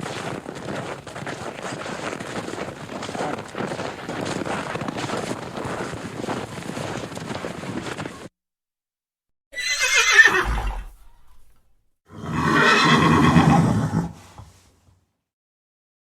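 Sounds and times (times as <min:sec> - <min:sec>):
horse whinnying: 0:09.6 - 0:14.6.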